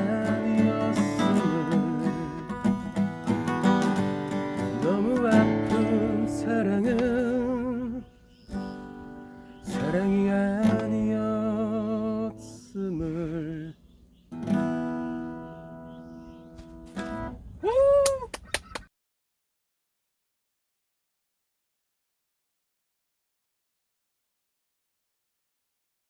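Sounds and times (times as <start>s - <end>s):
person singing with vibrato: 0.0s - 3.0s, 4.6s - 8.2s, 9.7s - 13.8s
acoustic guitar strumming: 0.0s - 13.7s, 14.3s - 17.4s.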